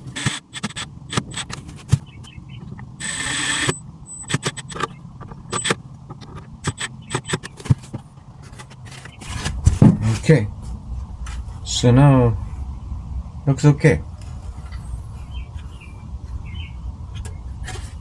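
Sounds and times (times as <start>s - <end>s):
power tool whirring: 0.0s - 1.7s, 2.6s - 7.7s
plastic parts clicking and knocking: 0.0s - 9.2s
short high whines: 2.8s - 5.8s.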